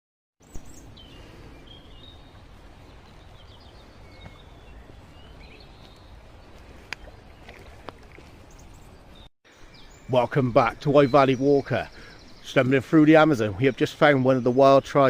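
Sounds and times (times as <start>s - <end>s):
birds chirping and calling: 0.4s - 15.0s
low outdoor rumble: 0.5s - 9.3s.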